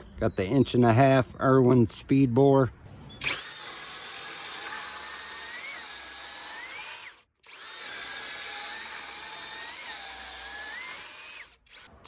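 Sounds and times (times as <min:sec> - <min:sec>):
drill boring wood: 0:03.2 - 0:11.9.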